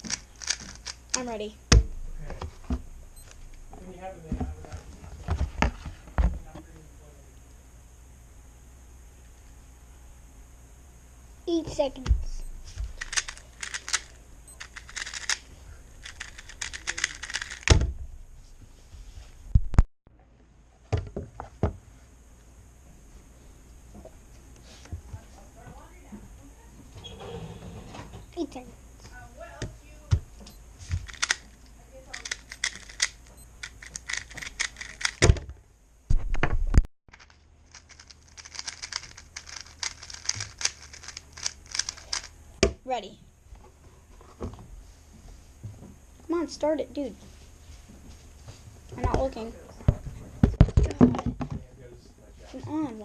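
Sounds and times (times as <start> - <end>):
puzzle cube clicking: 0.0 - 1.3, 13.0 - 15.4, 16.0 - 17.7, 31.0 - 31.5, 32.1 - 35.2, 37.2 - 42.3
loud thump: 1.7 - 3.0.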